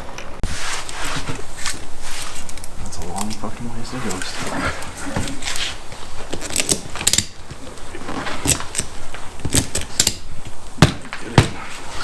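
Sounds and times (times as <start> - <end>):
ratchet strap pawl clicking: 6.4 - 7.4, 9.5 - 10.3.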